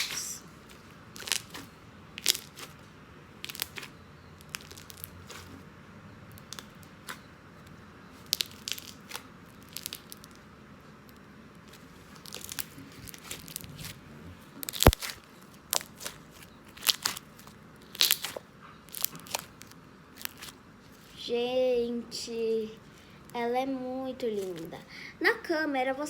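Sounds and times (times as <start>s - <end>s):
slime squeezed by hand: 0.0s - 0.5s, 1.1s - 2.8s, 11.7s - 14.0s, 14.6s - 21.2s.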